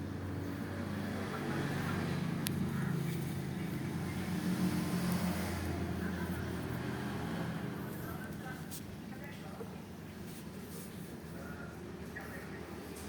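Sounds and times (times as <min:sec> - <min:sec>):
engine humming: 0:00.0 - 0:09.1.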